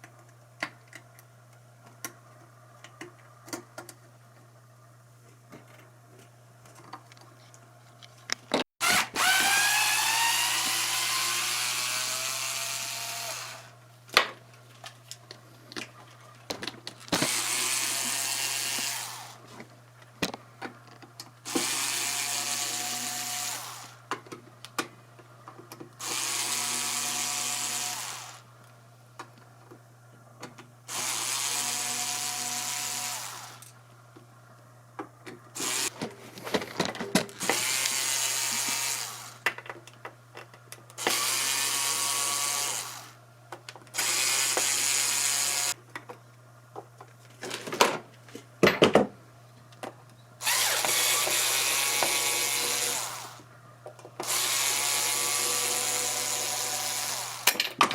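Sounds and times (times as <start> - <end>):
electric drill-driver running: 8.8 - 13.7, 17.1 - 19.4, 21.5 - 24.0, 26.0 - 28.4, 30.9 - 33.7, 35.6 - 36.0, 37.4 - 39.4, 41.0 - 43.2, 44.0 - 45.8, 50.4 - 53.4, 54.2 - 57.5
small clicks and knocks: 39.4 - 41.0.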